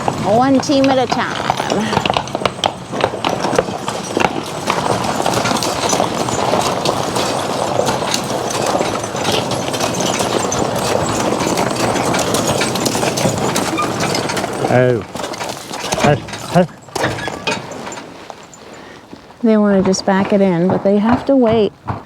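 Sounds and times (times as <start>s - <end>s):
horse hooves clopping: 0.0s - 22.0s.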